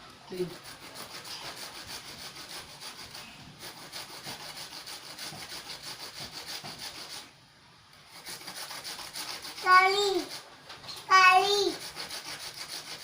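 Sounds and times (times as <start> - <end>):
vegetable grating on a grater: 0.3 - 7.3, 8.1 - 13.0.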